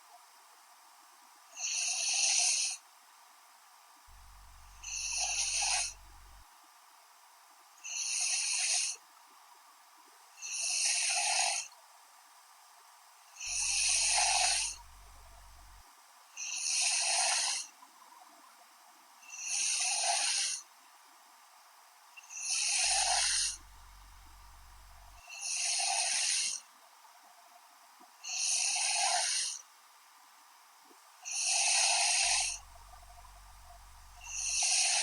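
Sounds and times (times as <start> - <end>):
woman snoring: 4.2 - 6.4, 10.5 - 11.6, 13.4 - 15.8, 16.5 - 17.6, 19.4 - 20.6, 22.4 - 26.6, 28.3 - 29.6, 31.3 - 35.0.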